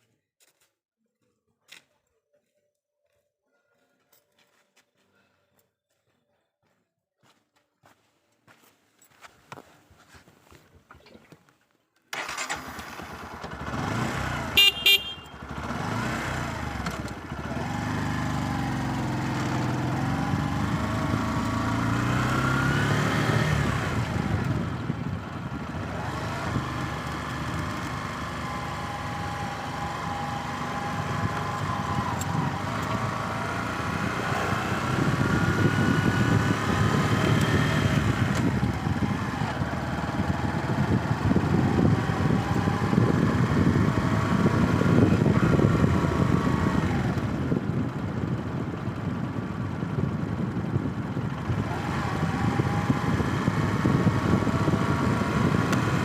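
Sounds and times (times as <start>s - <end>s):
vehicle engine revving: 12.2s - 56.0s
horn toot: 14.4s - 15.6s.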